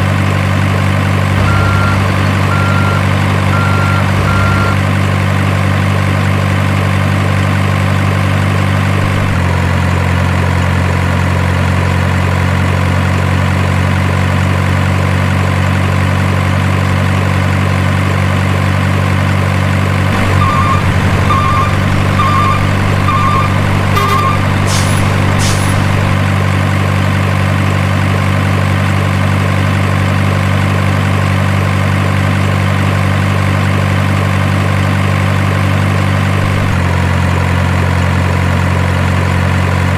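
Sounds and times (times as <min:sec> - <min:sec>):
truck diesel engine idling: 0:00.0 - 0:39.5
short beeps: 0:01.4 - 0:04.8, 0:20.2 - 0:26.2
short air hisses: 0:24.7 - 0:25.9.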